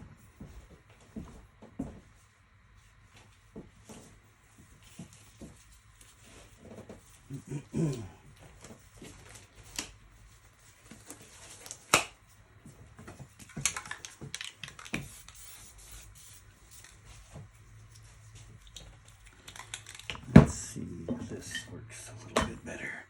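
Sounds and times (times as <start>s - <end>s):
objects clicking and knocking: 18.6s - 20.5s.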